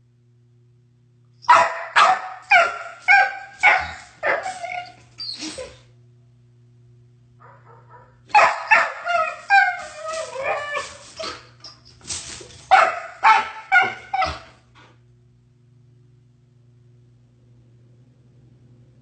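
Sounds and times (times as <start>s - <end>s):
faint steady hum: 0.0s - 19.0s
dog barking and whining: 1.4s - 5.9s, 7.4s - 14.6s.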